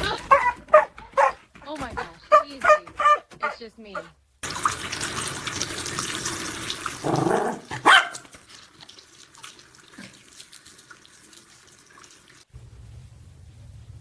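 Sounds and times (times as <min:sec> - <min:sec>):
dog barking: 0:00.2 - 0:01.4, 0:02.3 - 0:04.1, 0:07.2 - 0:08.3
water running from a tap: 0:04.4 - 0:12.5.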